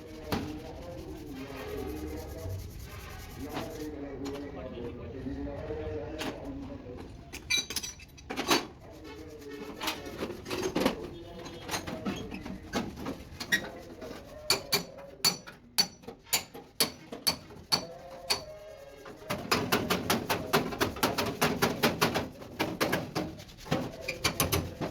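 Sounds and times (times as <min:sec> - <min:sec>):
metal tapping and clinking: 0:07.3 - 0:08.5.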